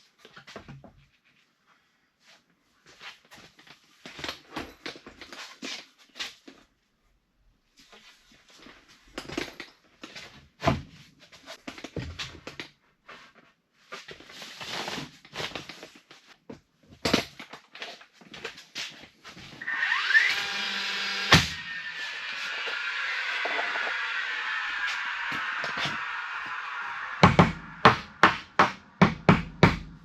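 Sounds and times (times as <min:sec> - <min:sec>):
power saw motor whining: 0:19.6 - 0:28.6
sharp knock: 0:27.0 - 0:29.9.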